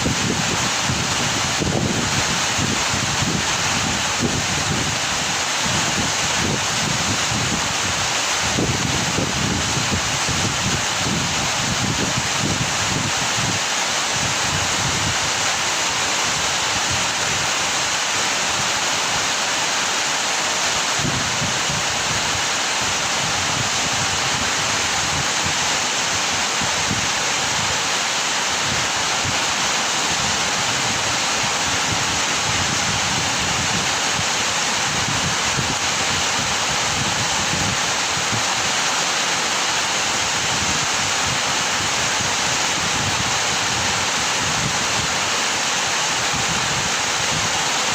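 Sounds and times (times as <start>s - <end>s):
heavy rain pouring: 0.0s - 47.9s.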